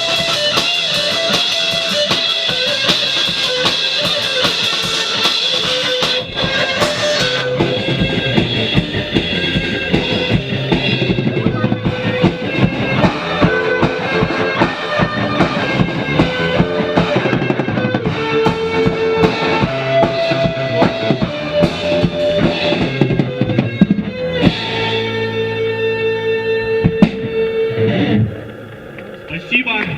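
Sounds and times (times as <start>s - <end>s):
drum kit beat: 0.0s - 27.7s
electric guitars: 0.0s - 29.9s.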